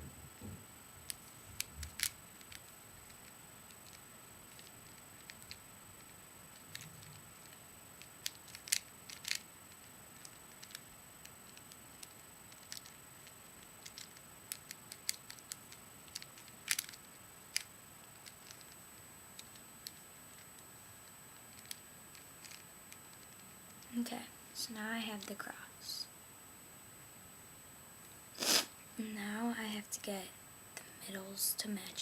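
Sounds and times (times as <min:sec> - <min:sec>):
faint hiss with high whine: 0:00.0 - 0:32.0
plastic cube clicking: 0:01.1 - 0:05.6, 0:06.6 - 0:13.0, 0:13.8 - 0:18.8, 0:21.5 - 0:22.6.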